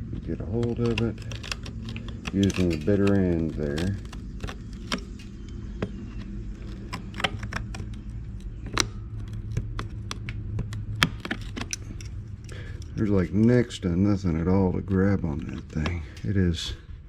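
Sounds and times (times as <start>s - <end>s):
low hum: 0.0s - 17.0s
pliers clicking on metal bolt: 0.6s - 5.1s.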